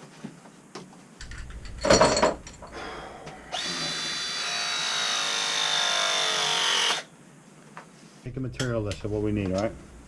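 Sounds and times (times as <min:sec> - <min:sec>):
clunk: 0:01.2 - 0:02.7
press tool motor whine: 0:03.5 - 0:07.1.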